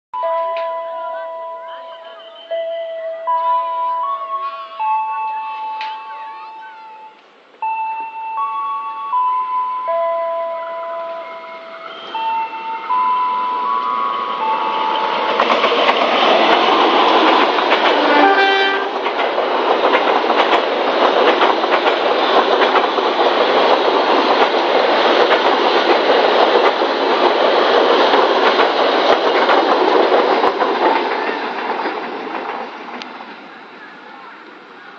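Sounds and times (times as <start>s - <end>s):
electronic chime melody: 0.2s - 15.4s
passenger train passing: 0.2s - 34.9s
wheels clicking over rail joints: 13.8s - 34.8s
locomotive horn blast: 17.9s - 19.1s.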